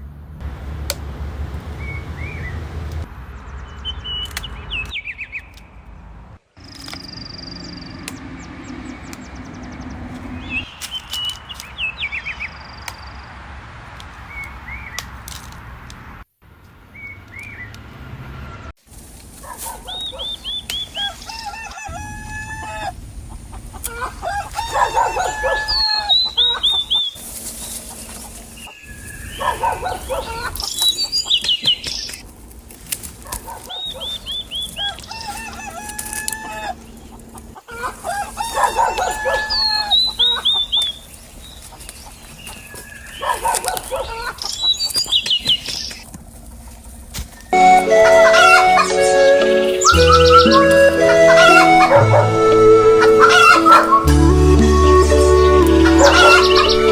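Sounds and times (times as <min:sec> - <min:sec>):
chickens clucking: 0:19.7 - 0:27.0, 0:33.5 - 0:40.9, 0:47.6 - 0:56.9
rooster crowing: 0:21.0 - 0:23.0, 0:23.9 - 0:26.2, 0:34.8 - 0:36.9, 0:37.7 - 0:40.0, 0:47.6 - 0:56.9.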